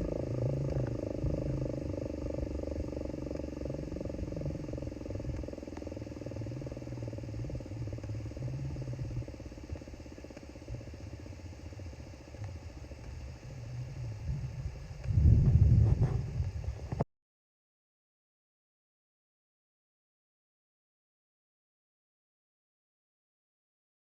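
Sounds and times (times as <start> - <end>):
wind rumble on microphone: 0.0 - 11.1, 12.4 - 17.0
tornado warning siren: 0.0 - 13.2.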